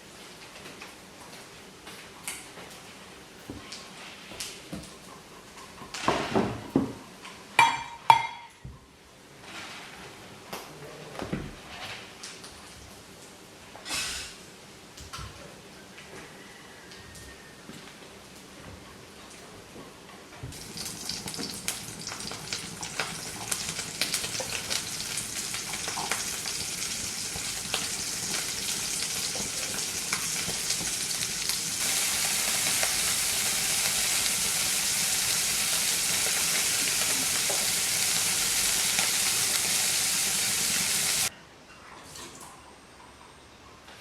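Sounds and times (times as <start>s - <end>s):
food sizzling in hot oil: 20.5s - 41.3s.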